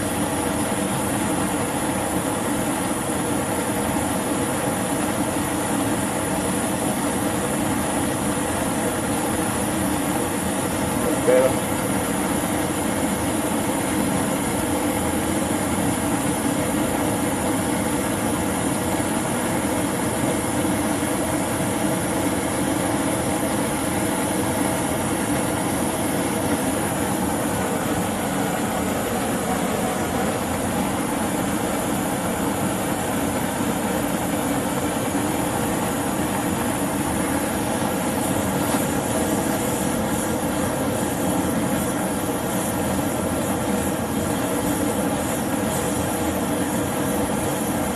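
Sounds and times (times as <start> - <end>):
torch flame burning: 0.0 - 47.9.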